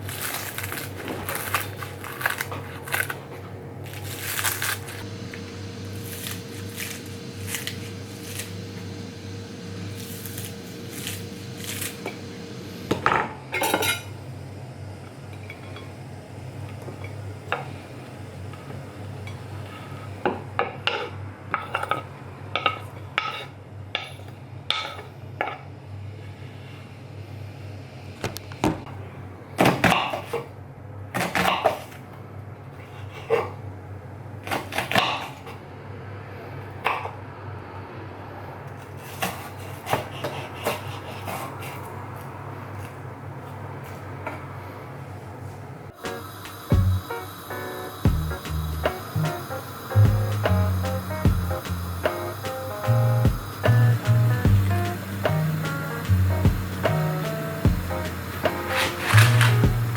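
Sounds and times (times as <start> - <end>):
steady low hum: 0.0 - 20.2, 44.6 - 59.9
pots and pans clinking: 13.1 - 14.2, 54.5 - 59.9
utensils clattering: 57.3 - 59.9.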